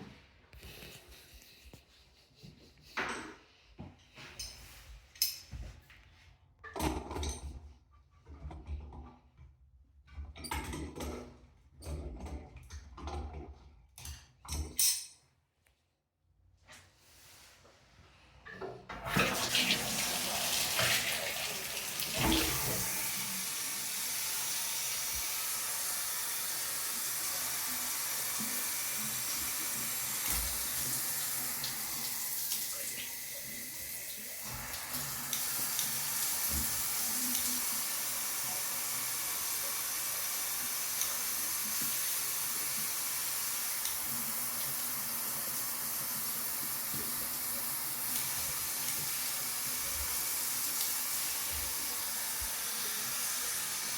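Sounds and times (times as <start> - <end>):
shower head spraying water: 19.2 - 53.9.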